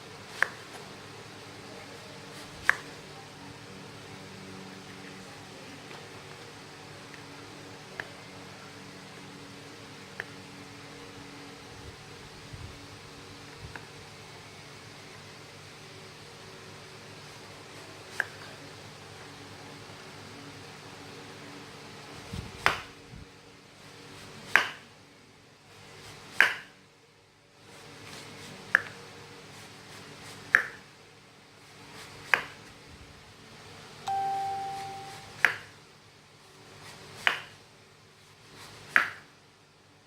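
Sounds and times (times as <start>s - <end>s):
short steady beep: 34.1s - 35.4s.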